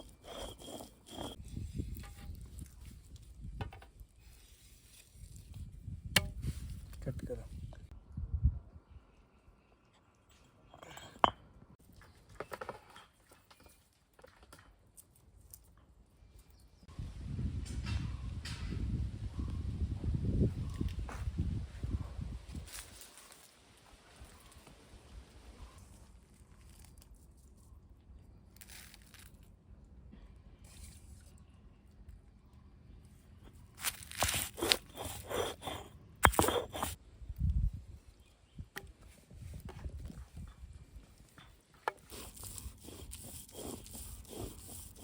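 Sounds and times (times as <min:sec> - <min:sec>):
soft scrapes: 0:00.0 - 0:03.0, 0:33.8 - 0:37.0.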